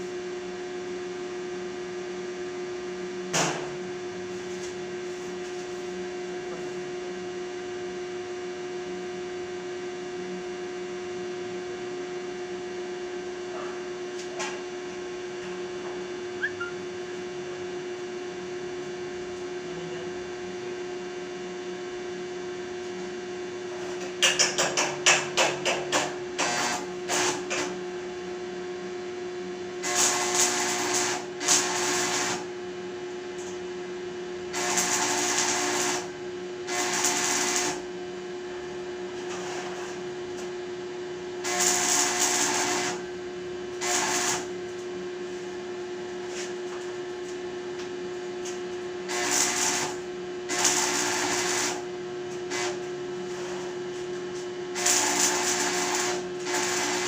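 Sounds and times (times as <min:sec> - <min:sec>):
welding machine hum: 0:23.8 - 0:27.8, 0:29.8 - 0:33.6, 0:34.4 - 0:40.6, 0:41.2 - 0:57.0
arc welding crackling: 0:26.0 - 0:27.7, 0:29.8 - 0:32.5, 0:34.5 - 0:37.9, 0:41.4 - 0:43.0, 0:43.8 - 0:44.5, 0:48.4 - 0:57.0.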